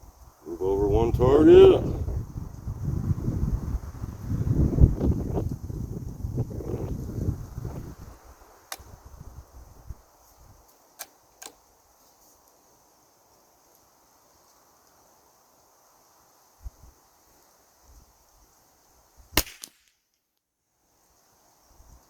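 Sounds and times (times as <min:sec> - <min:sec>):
faint steady hiss: 0:00.0 - 0:22.0
rifle bolt metallic clicks: 0:11.0 - 0:11.6.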